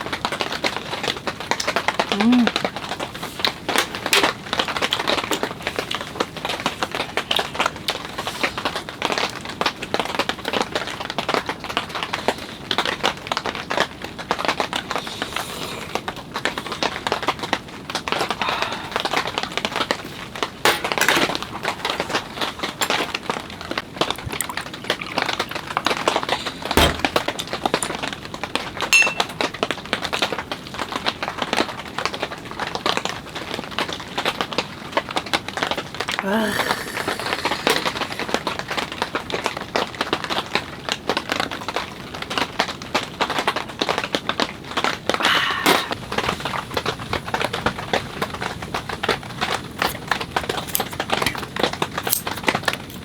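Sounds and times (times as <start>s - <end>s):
rain pattering on tent: 0.0s - 15.3s, 15.9s - 53.0s
knock on tent: 26.8s - 27.2s.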